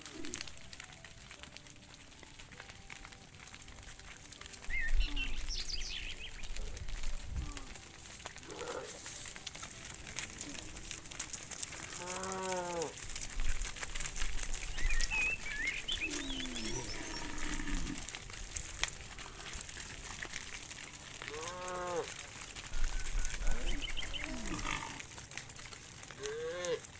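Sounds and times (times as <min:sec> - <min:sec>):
high bird chirps: 0:04.7 - 0:06.5, 0:14.7 - 0:17.6
cattle lowing: 0:06.4 - 0:18.3, 0:21.2 - 0:25.1.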